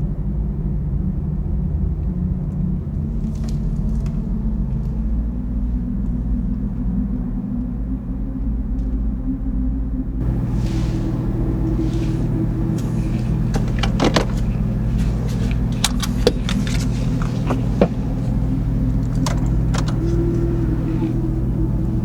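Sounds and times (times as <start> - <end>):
car engine idling: 10.2 - 22.0
light jangling rattle: 10.2 - 22.0
sharp clicks: 12.6 - 20.7.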